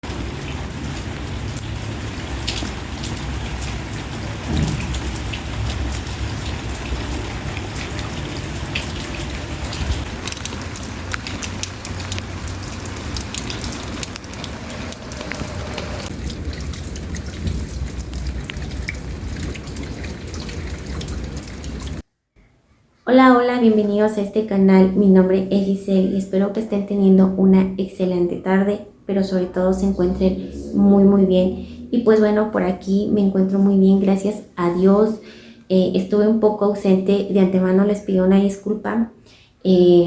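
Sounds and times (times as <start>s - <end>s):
steady rain falling: 0.0s - 22.0s
drops ticking on hard surface: 4.4s - 22.0s
low rumble: 29.3s - 32.9s.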